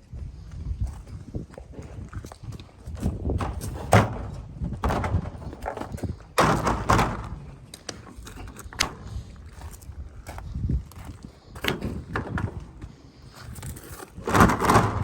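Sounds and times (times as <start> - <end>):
knocks and clattering on shutters: 3.0 - 9.2.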